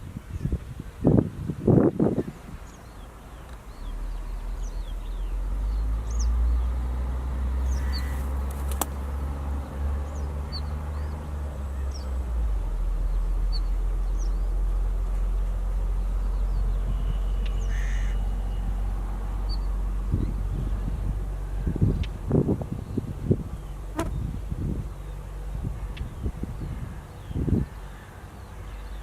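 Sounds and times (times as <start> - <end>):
high thin bird calls: 7.7 - 9.0.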